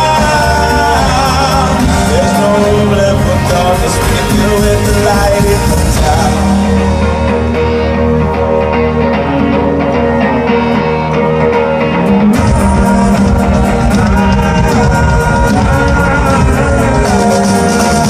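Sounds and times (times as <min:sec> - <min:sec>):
cymbals and drums: 0:00.0 - 0:07.2, 0:12.4 - 0:18.0
live country-rock band: 0:00.0 - 0:18.0.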